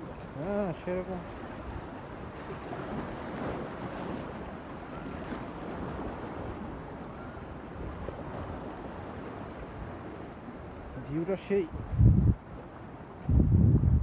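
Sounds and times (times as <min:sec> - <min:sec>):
ocean water rushing: 0:00.0 - 0:14.0
wind rushing: 0:11.7 - 0:12.4, 0:13.3 - 0:14.0.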